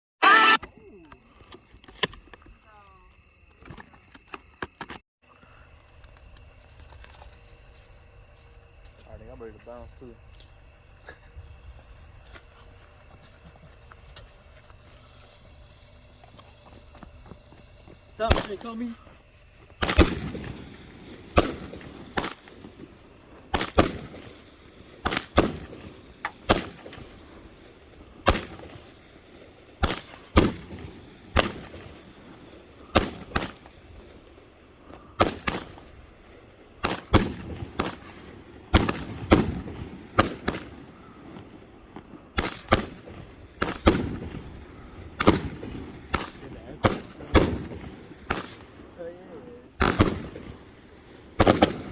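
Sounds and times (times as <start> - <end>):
firework bangs echoing: 17.9 - 19.0, 19.7 - 27.4, 28.1 - 29.2, 29.8 - 34.2, 34.8 - 48.9, 49.8 - 51.9.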